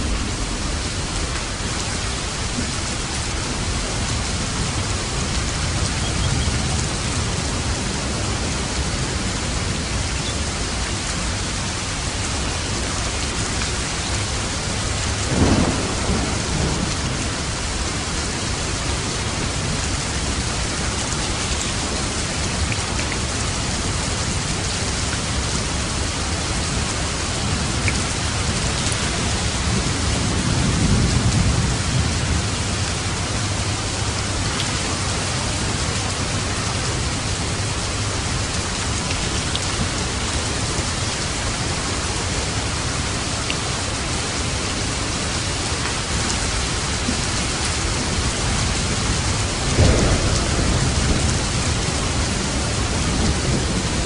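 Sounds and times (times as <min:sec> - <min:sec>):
rolling thunder rumble: 0:00.0 - 0:10.0, 0:10.9 - 0:24.0, 0:25.2 - 0:44.2, 0:46.2 - 0:54.0
heavy rain on a roof: 0:00.0 - 0:54.0
sharp thunderclap: 0:15.3 - 0:17.6, 0:48.9 - 0:54.0.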